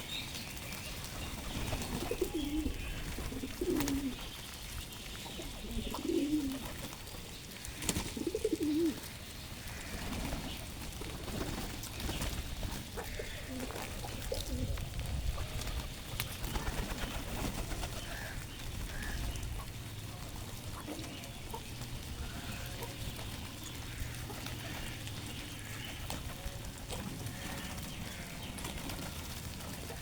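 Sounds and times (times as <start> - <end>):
bird calls: 0.0 - 6.8, 11.3 - 14.8.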